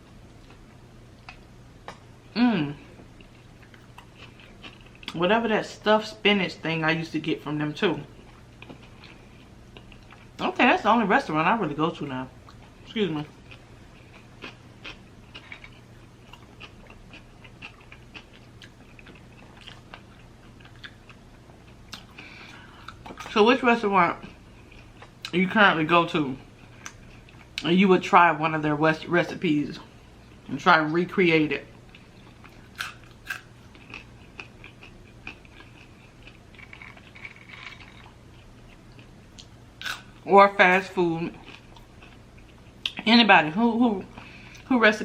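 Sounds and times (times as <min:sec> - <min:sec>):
person chewing food: 0:00.0 - 0:02.0, 0:02.6 - 0:05.2, 0:08.1 - 0:10.4, 0:12.4 - 0:23.3, 0:24.2 - 0:25.4, 0:26.5 - 0:27.6, 0:31.7 - 0:40.2, 0:41.3 - 0:43.0
faint steady hum: 0:00.0 - 0:45.0.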